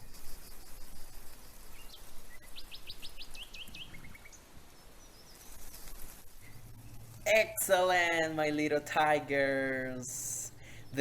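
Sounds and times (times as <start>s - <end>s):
faint background hiss: 0.0s - 11.0s
bird chirping: 1.7s - 11.0s.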